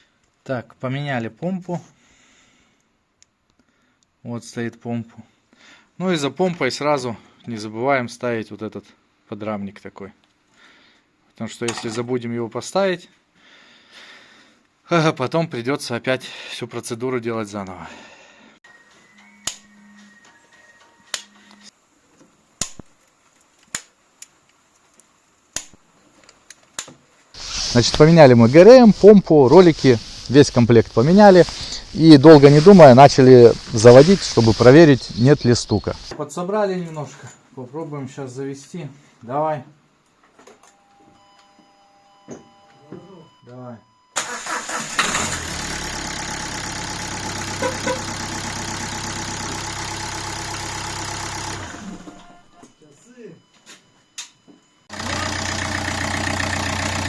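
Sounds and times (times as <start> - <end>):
diesel engine idling: 54.9 - 57.0.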